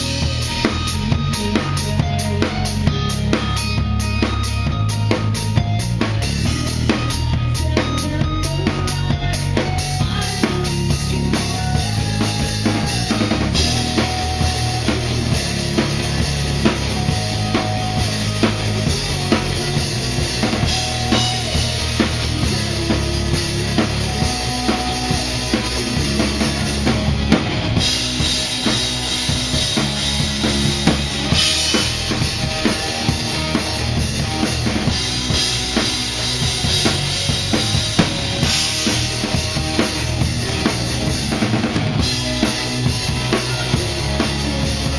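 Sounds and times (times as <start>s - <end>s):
live band playing: 0.0s - 44.9s.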